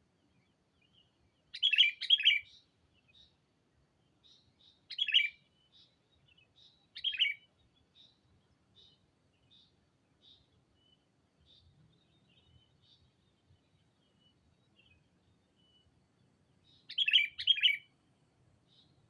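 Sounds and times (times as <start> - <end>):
faint short bird chirps: 0.9 - 3.4, 4.2 - 15.0, 16.6 - 17.9.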